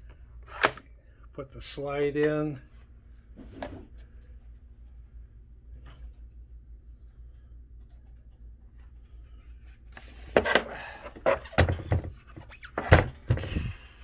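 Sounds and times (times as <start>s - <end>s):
low steady hum: 0.0s - 14.0s
plastic handling knocks and clicks: 10.3s - 13.7s.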